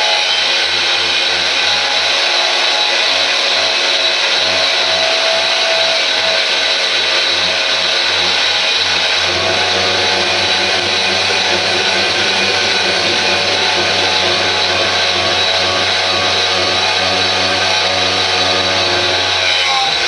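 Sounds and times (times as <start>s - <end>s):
wire brush power tool scouring steel: 0.0s - 20.0s.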